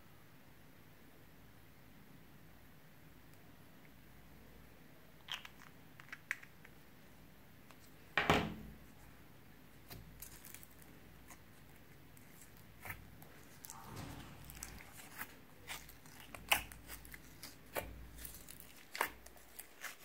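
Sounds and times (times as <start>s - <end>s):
slime clicking and crackling: 9.8s - 20.0s.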